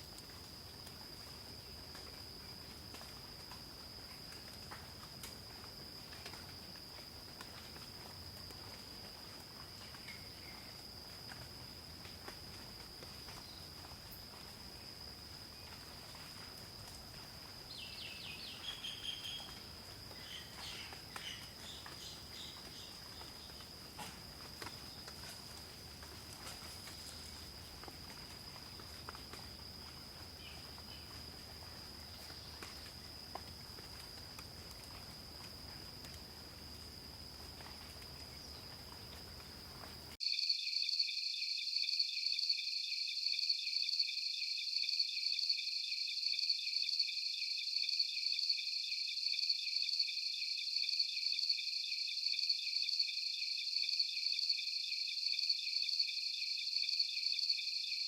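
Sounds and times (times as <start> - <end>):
pulsing insect chorus: 0.0 - 58.0
short insect chirps: 15.4 - 25.2.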